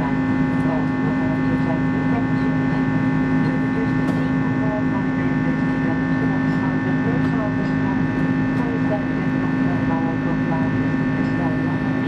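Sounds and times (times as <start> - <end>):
aircraft engine drone: 0.0 - 12.0.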